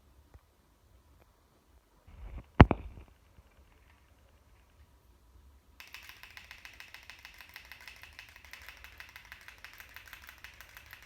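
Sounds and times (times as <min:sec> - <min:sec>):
garage door opener rapid clicking: 0:05.8 - 0:11.0.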